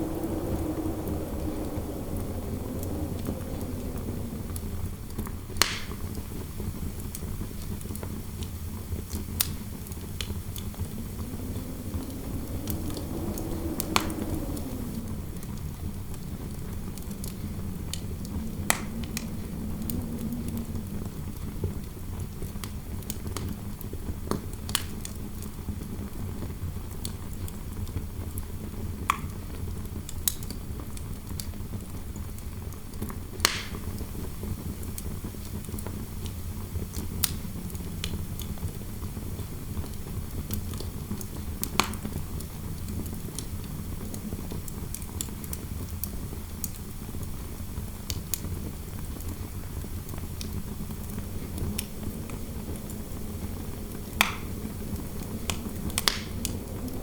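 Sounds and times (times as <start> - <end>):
sharp pops of fire: 0.0 - 6.3, 33.4 - 34.1, 50.4 - 57.0
wood fire crackling: 0.0 - 25.8, 29.9 - 57.0
low rumble of wind: 0.0 - 57.0.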